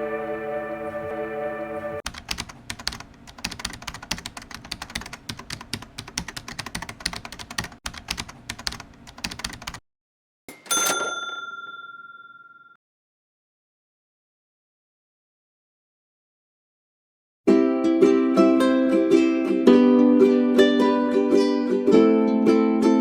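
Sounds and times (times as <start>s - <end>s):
music: 0.0s - 2.0s, 17.5s - 23.0s
keyboard typing clicks: 2.1s - 9.8s
bright ding: 10.5s - 12.8s.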